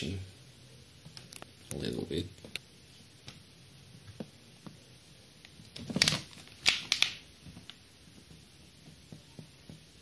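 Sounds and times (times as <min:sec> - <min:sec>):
plastic clicks: 0:05.4 - 0:07.8
plastic scraping and rattling: 0:05.7 - 0:07.2.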